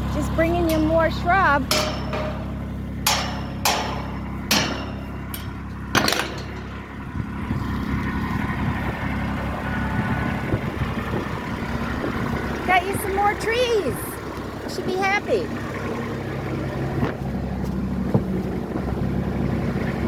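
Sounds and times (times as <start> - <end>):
utility vehicle engine running: 0.0 - 20.0
sharp knocks: 0.6 - 7.3.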